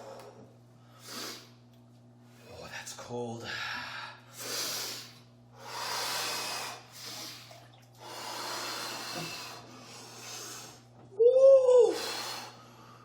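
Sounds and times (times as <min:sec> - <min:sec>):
man breathing heavily: 0:03.4 - 0:10.9.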